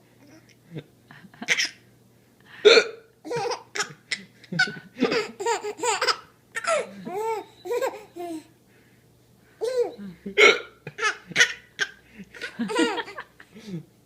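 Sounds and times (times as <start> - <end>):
baby laughing: 3.2 - 8.5, 9.6 - 10.0, 10.9 - 13.3.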